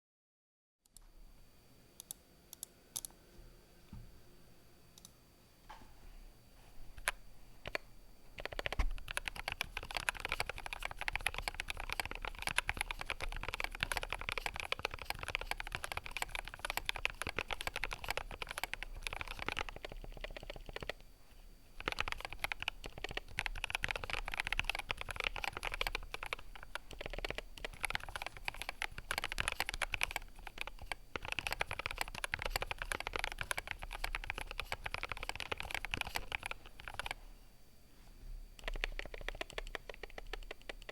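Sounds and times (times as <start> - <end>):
fast mechanical keyboard typing: 7.0 - 7.8, 8.4 - 21.0, 21.8 - 37.2, 38.6 - 40.9.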